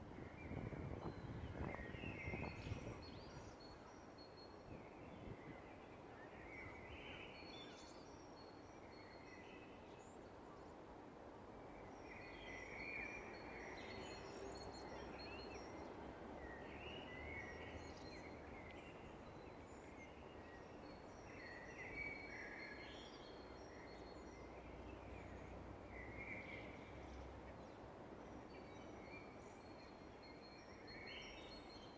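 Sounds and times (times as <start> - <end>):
songbirds singing and chirping: 0.2 - 10.2.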